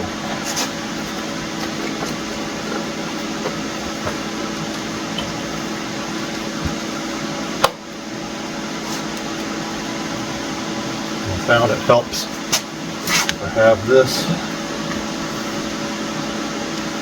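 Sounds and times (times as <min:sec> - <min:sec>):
machine hum and hiss: 0:00.0 - 0:17.0.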